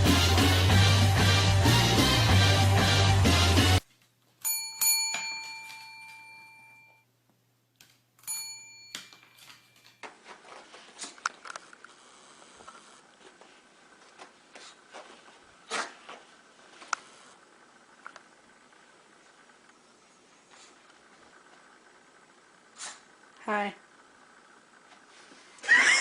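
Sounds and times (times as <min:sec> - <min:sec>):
small bell ringing: 0:04.4 - 0:07.1, 0:08.2 - 0:09.9.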